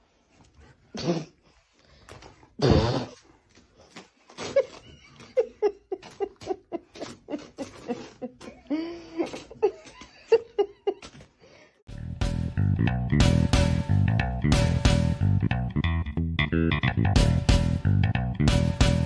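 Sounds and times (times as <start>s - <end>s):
music with bass and guitar: 11.9s - 19.0s.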